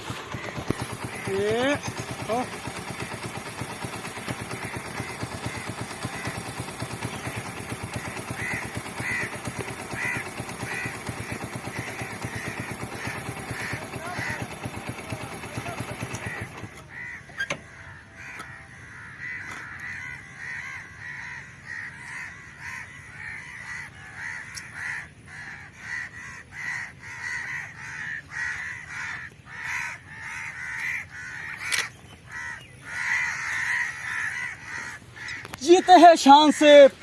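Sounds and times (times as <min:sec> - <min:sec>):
bird cawing: 0:00.0 - 0:37.0.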